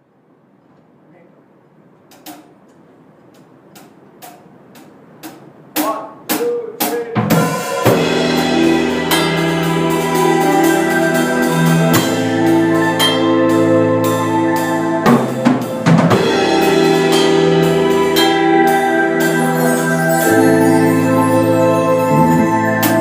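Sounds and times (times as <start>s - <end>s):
instrumental band playing: 3.9s - 23.0s
drum hits and fill: 5.2s - 13.3s, 15.1s - 19.7s.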